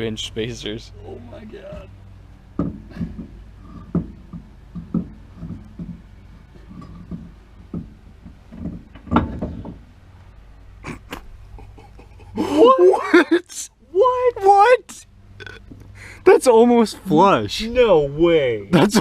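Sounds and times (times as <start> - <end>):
knocks and clunks of wheel fitting: 2.5 - 9.9.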